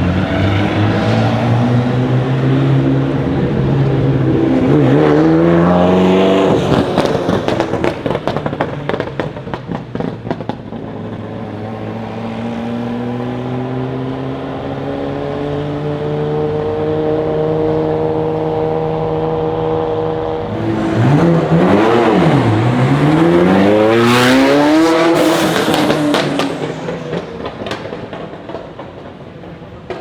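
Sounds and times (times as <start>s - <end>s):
sports car engine revving: 0.0s - 28.6s
exhaust pops and crackles: 6.4s - 11.7s, 25.0s - 30.0s.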